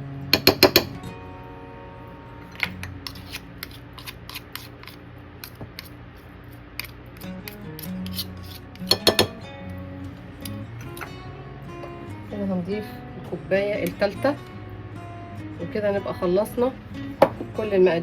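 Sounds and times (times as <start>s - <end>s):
soft background music: 0.0s - 5.2s, 7.0s - 18.0s
utensil scraping mixing bowl: 3.0s - 5.9s, 6.8s - 9.4s.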